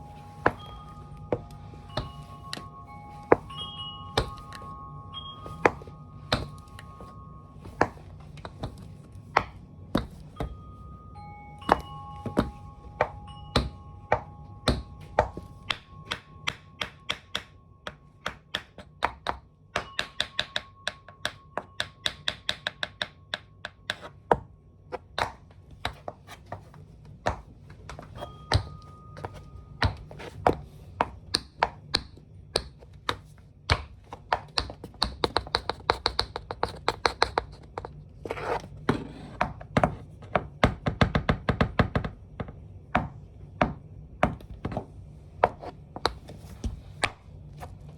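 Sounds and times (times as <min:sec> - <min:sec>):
tap shoes on hard floor: 0:04.2 - 0:04.8, 0:11.6 - 0:38.0.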